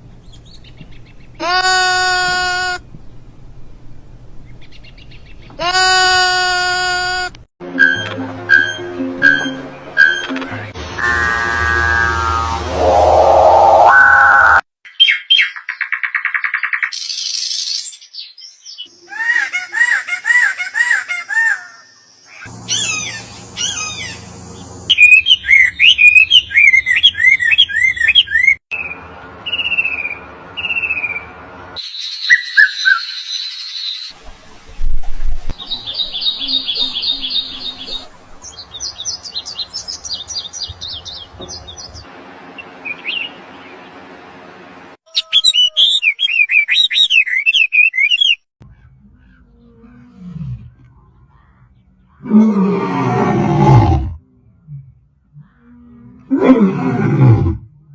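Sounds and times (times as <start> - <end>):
birds chirping and whistling: 11.9 - 18.9, 22.3 - 34.1, 35.6 - 42.0, 45.2 - 48.4.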